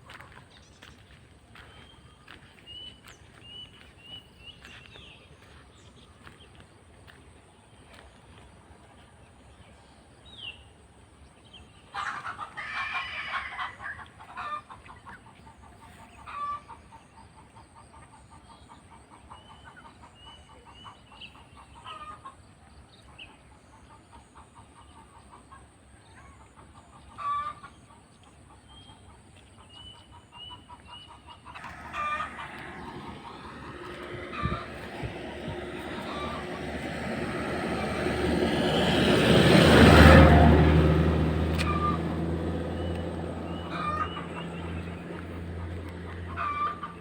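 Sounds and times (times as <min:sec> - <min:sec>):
small birds chirping: 0:00.1 - 0:06.7
chickens calling: 0:30.6 - 0:47.0.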